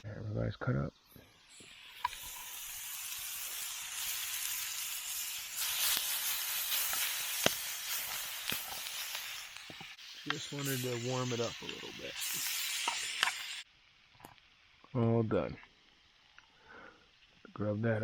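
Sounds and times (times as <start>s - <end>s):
meat and vegetables sizzling in a pan: 0.0s - 17.8s
sharp pops of frying: 1.1s - 14.9s.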